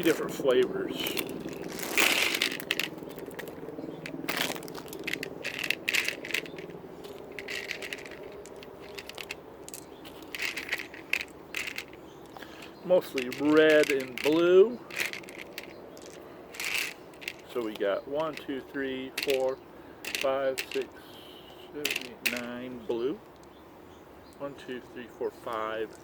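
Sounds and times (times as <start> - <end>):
candy packet rustling: 1.0 - 18.4.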